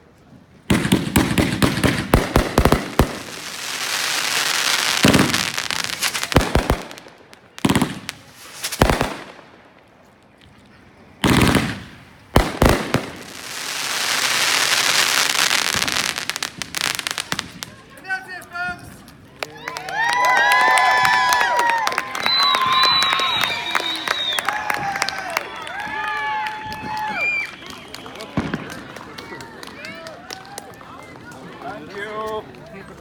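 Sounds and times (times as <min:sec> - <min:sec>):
fireworks bangs: 0:00.6 - 0:10.0, 0:11.2 - 0:17.8, 0:22.1 - 0:29.8
fireworks crackling pops: 0:00.6 - 0:10.6, 0:11.2 - 0:19.8, 0:22.2 - 0:31.5
fireworks hiss: 0:00.8 - 0:07.0, 0:07.6 - 0:09.2, 0:11.3 - 0:17.6.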